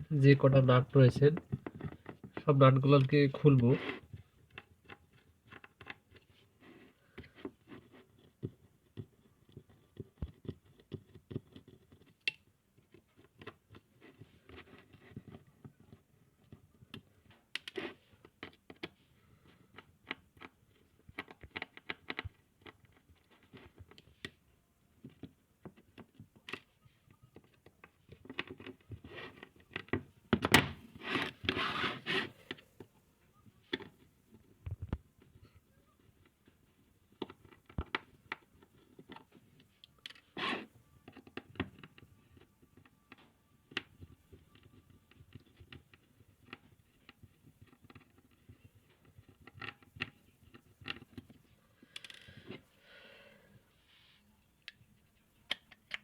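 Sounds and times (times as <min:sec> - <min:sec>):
screwdriver clicking and scratching: 0:01.2 - 0:06.4, 0:07.2 - 0:19.0, 0:19.7 - 0:24.4, 0:27.3 - 0:30.0, 0:37.1 - 0:51.4.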